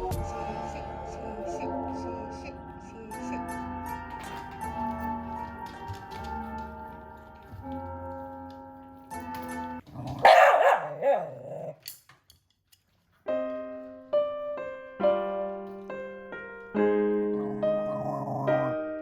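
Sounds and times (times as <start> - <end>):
piano music: 0.0 - 11.6, 13.2 - 19.0
dog barking: 10.0 - 11.8.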